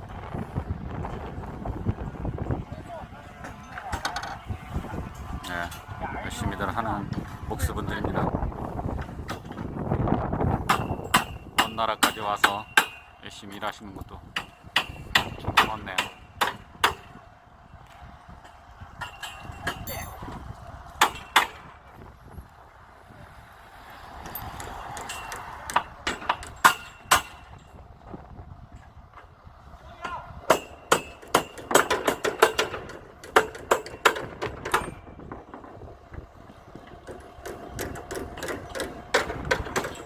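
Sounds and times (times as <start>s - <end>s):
low wind rumble: 0.0s - 40.0s
hammering on wood: 10.6s - 13.1s, 14.4s - 17.2s, 21.0s - 21.6s, 24.6s - 27.5s, 30.0s - 35.0s, 37.0s - 40.0s.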